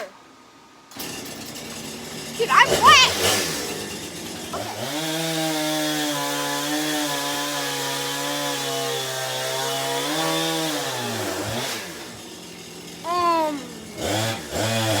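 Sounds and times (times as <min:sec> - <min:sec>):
chainsaw cutting: 0:00.9 - 0:15.0.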